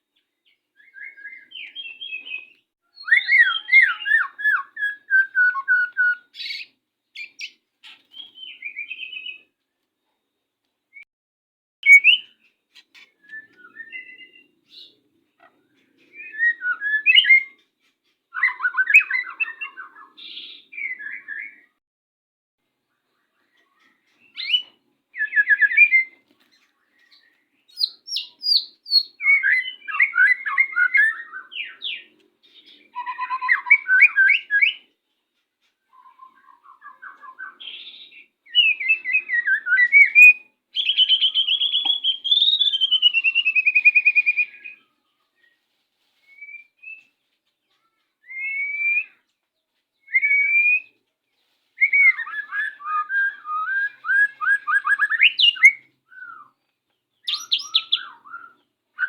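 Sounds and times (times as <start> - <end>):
bird singing whistles and trills: 0.2 - 9.6, 11.8 - 15.0, 16.0 - 17.6, 18.3 - 21.8, 23.6 - 26.2, 27.0 - 34.9, 35.9 - 45.6, 46.2 - 47.2, 48.2 - 49.3, 50.0 - 51.0, 51.8 - 59.0.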